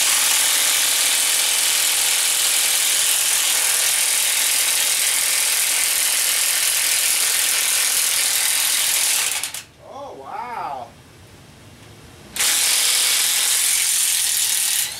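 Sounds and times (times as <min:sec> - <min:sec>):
impact wrench hammering: 0:00.0 - 0:09.6.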